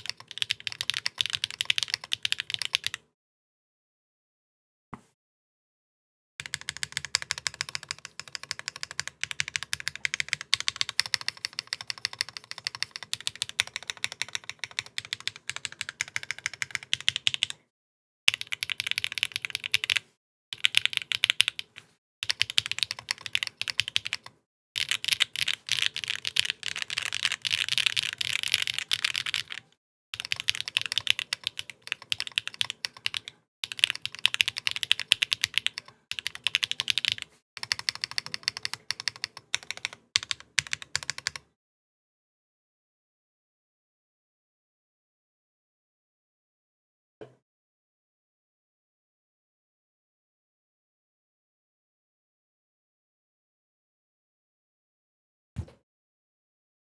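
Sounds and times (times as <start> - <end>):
mechanical keyboard typing: 0.0 - 3.0, 6.4 - 17.6, 18.3 - 20.0, 20.6 - 41.4.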